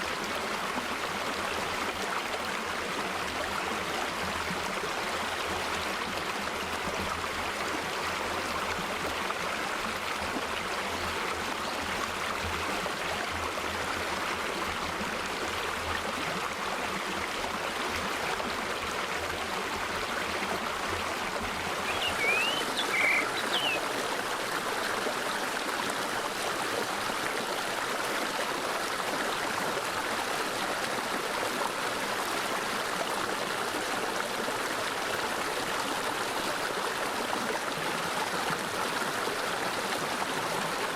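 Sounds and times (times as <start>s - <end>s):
stream flowing: 0.0s - 40.9s
bird chirping: 21.8s - 23.8s.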